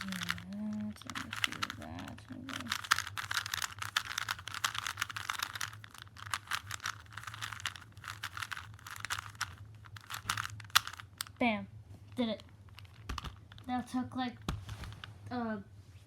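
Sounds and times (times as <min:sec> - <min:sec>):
plastic puzzle cube clicking: 0:00.0 - 0:11.4, 0:12.4 - 0:13.7.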